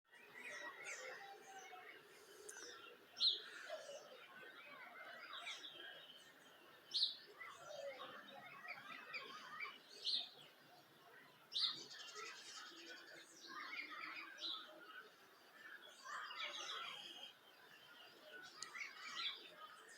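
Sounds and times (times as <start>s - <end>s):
birds singing and calling: 0.1s - 19.9s.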